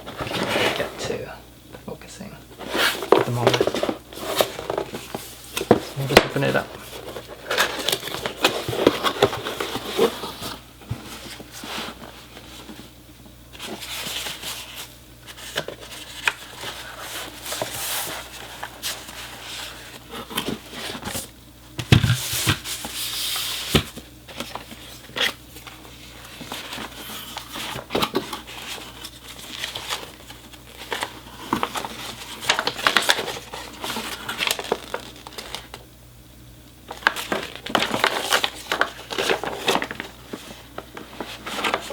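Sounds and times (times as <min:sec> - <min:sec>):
cardboard sliding: 0:02.6 - 0:12.7
packing material rustling: 0:02.6 - 0:12.7, 0:13.6 - 0:21.3, 0:22.1 - 0:35.8, 0:36.9 - 0:41.9.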